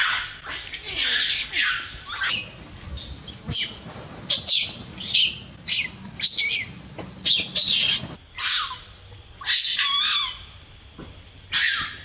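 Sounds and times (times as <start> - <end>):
baby monkey squealing: 2.3 - 8.2.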